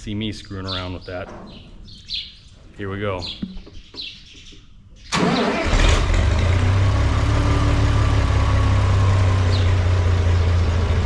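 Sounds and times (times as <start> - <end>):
tractor engine idling: 5.1 - 11.0.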